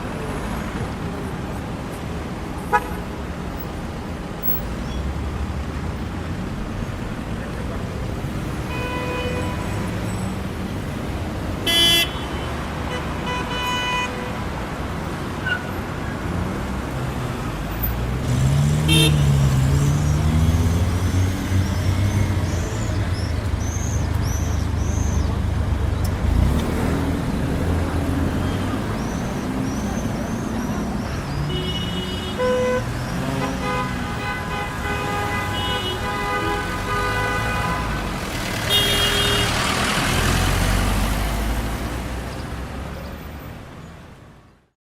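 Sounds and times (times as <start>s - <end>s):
street traffic: 0.0s - 44.8s
car horn honking: 8.7s - 9.8s, 11.6s - 14.4s, 18.8s - 19.4s, 31.5s - 38.0s, 38.6s - 39.7s
horns tooting: 11.6s - 14.5s, 18.3s - 24.5s, 26.2s - 40.7s
vehicle pulling away: 18.0s - 30.9s, 38.0s - 43.0s.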